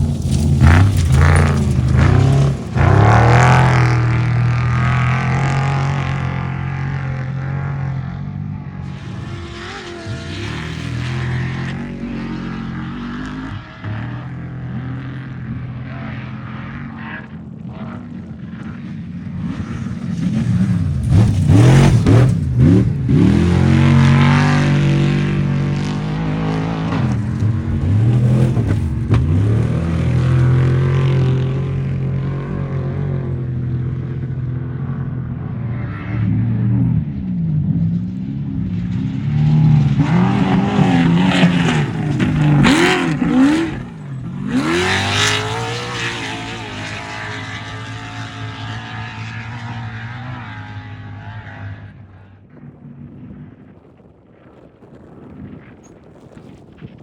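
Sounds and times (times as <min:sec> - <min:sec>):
race vehicle engines revving: 0:00.0 - 0:53.4
steady engine drone: 0:00.0 - 0:53.8.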